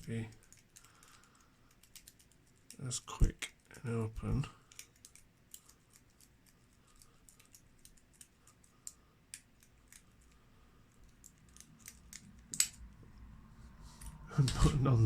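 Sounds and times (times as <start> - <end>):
lock pick clicking and scratching: 0.1 - 2.8, 4.6 - 13.0.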